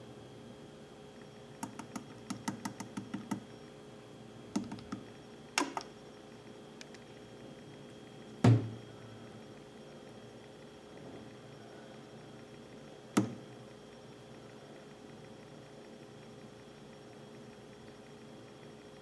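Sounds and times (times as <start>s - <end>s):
loud thump: 8.4s - 8.8s.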